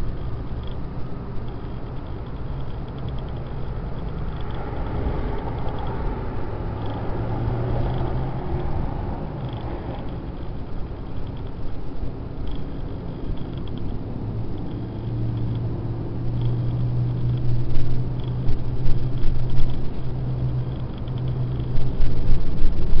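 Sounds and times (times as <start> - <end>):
low droning hum: 0.0 - 23.0
rumbling background: 0.0 - 23.0.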